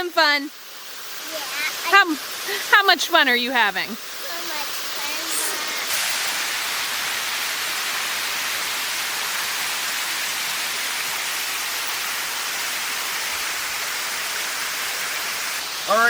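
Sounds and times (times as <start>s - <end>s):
water pouring over waterfall: 0.6s - 2.8s, 3.9s - 16.0s.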